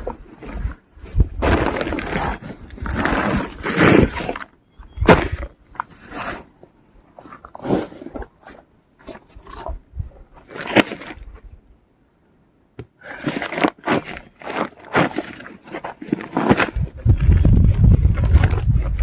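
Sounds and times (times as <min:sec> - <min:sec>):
scraping and rustling: 0:13.1 - 0:19.0.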